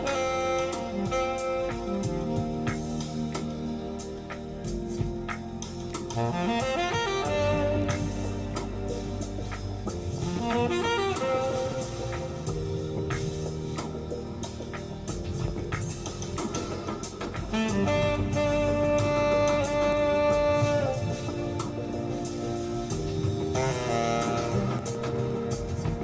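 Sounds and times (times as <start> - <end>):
drum kit keeping time: 0.0 - 26.0
saxophone melody: 0.0 - 26.0.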